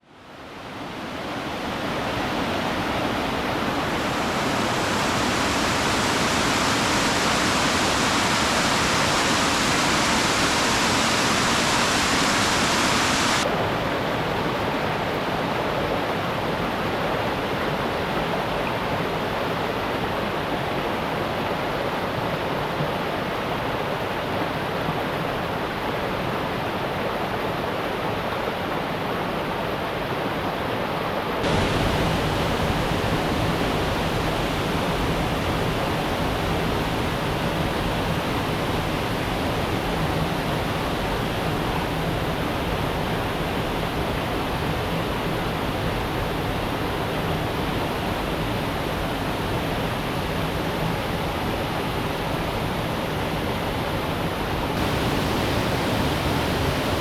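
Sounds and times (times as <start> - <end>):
falling water rushing: 0.9 - 13.5, 31.4 - 50.6, 54.5 - 57.0.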